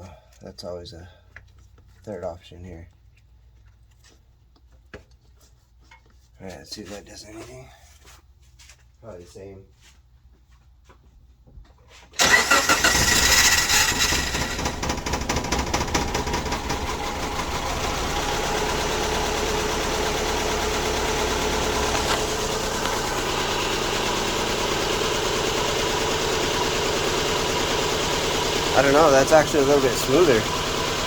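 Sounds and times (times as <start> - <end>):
car engine starting and idling: 12.2 - 31.0.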